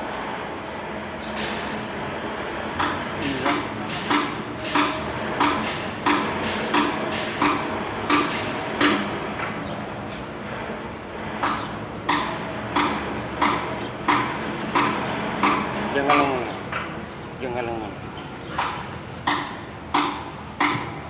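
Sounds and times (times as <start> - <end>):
hammer striking metal: 2.8 - 9.6, 11.4 - 16.9, 18.5 - 21.0.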